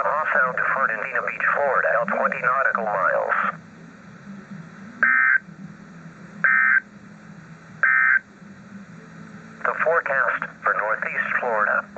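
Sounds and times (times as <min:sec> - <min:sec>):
faint low radio hum: 0:00.0 - 0:11.9
digital data tone bursts: 0:06.4 - 0:06.8.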